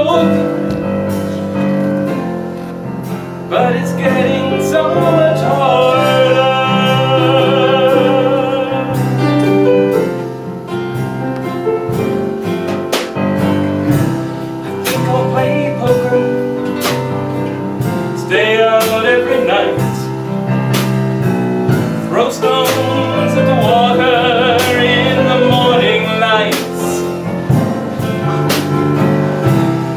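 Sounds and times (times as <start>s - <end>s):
man singing with vibrato: 0.0s - 1.6s, 3.4s - 10.2s, 14.6s - 16.9s, 17.8s - 20.6s, 21.8s - 28.4s
band playing cabaret song: 0.0s - 29.9s.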